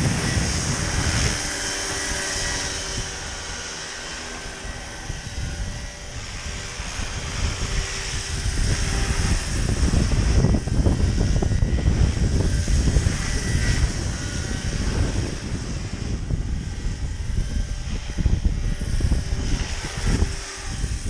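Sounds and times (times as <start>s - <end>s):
rc helicopter rotors whine: 0.0s - 21.0s
wind buffeting microphone: 0.0s - 21.0s.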